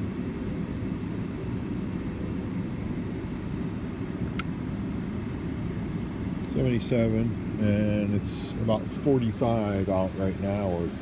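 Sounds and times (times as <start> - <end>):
car engine running: 5.7 - 11.0.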